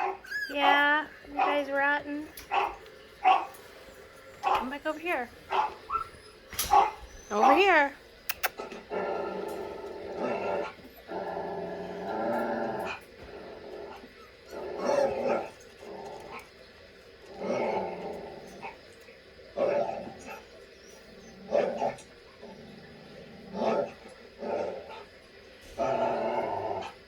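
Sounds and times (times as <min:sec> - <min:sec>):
dog barking: 0:00.0 - 0:00.2, 0:02.5 - 0:03.6, 0:05.5 - 0:07.6
dog growling: 0:00.0 - 0:27.0.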